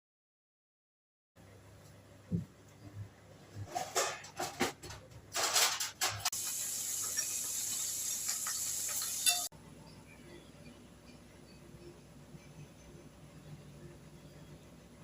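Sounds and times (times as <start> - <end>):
clattering and rustling: 3.5 - 6.3
hot oil sizzling in a pan: 6.3 - 9.5.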